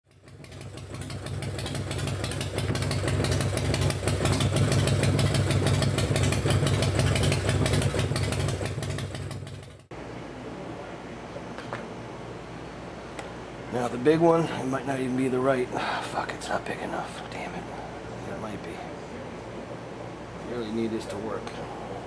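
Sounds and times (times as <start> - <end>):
motorcycle engine idling: 0.1 - 9.9.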